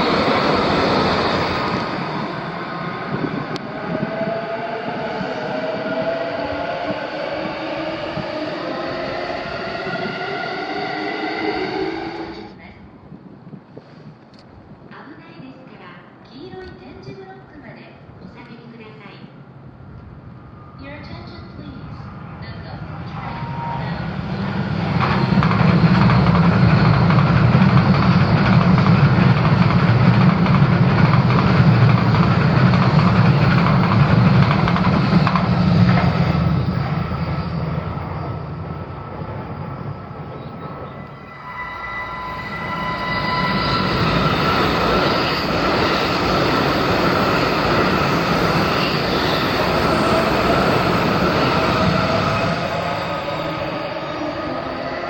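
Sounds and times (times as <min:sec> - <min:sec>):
train squealing: 0:00.0 - 0:12.6, 0:20.4 - 0:55.0
train passing rumble: 0:00.0 - 0:14.9, 0:19.0 - 0:55.0
rising whine: 0:22.2 - 0:55.0.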